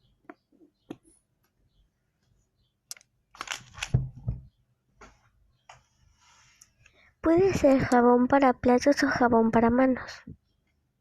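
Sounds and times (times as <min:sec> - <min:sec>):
knocks and rustling: 0:03.8 - 0:05.8.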